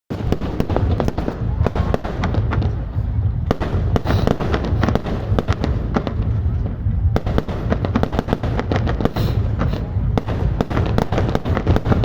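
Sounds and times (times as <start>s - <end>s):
continuous low rumble: 0.1s - 12.0s
fireworks shells bursting: 7.3s - 12.0s.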